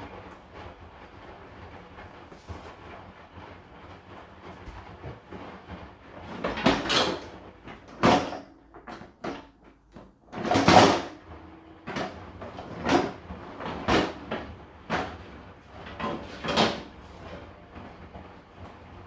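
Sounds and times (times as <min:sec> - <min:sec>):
dishwasher racks sliding: 0:04.5 - 0:19.0.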